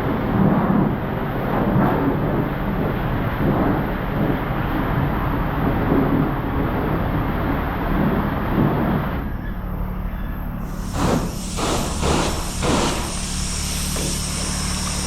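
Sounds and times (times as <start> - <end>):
pressure washer spray hissing: 10.6 - 15.0.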